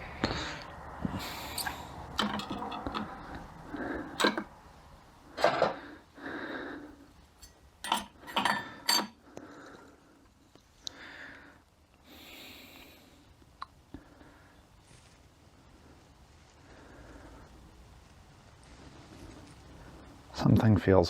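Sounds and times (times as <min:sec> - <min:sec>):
person sniffing: 0:00.2 - 0:01.9
steel parts clinking: 0:01.3 - 0:03.2, 0:04.2 - 0:04.5, 0:07.4 - 0:09.2.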